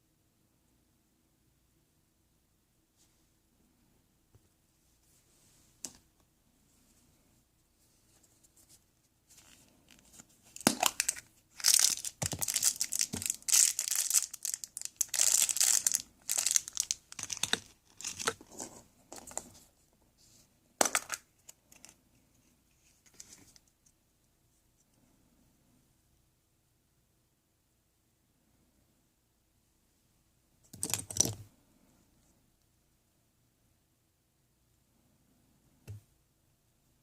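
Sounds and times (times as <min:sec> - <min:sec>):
packaging ripping and rustling: 0:10.6 - 0:18.4.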